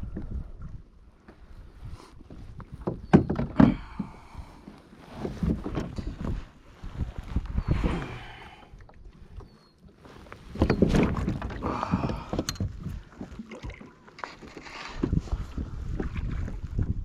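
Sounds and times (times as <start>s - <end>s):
kayak splashing on water: 9.1s - 16.9s.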